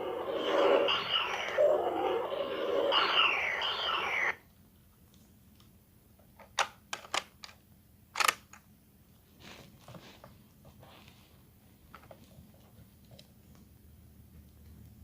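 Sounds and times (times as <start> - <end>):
toy electronic zapping sweeps: 0.0 - 4.4
plastic toy clicks and knocks: 6.4 - 7.6, 8.2 - 8.6.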